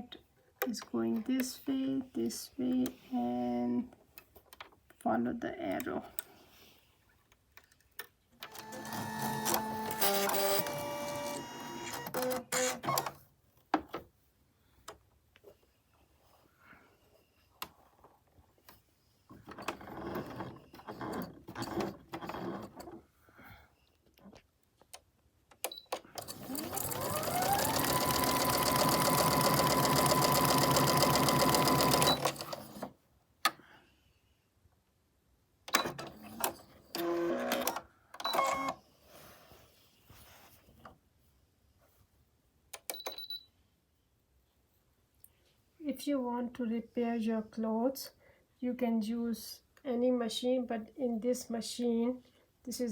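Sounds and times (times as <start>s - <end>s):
sewing machine motor whining: 8.5s - 13.1s, 26.2s - 32.8s
sewing machine clicks: 25.6s - 32.9s.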